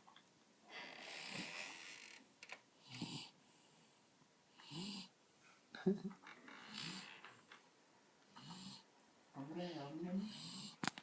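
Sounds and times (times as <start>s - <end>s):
dog snoring: 1.1s - 1.7s, 2.8s - 3.4s, 4.6s - 5.1s, 6.7s - 7.2s, 8.3s - 8.9s, 9.7s - 10.8s
dog breathing: 9.5s - 10.8s.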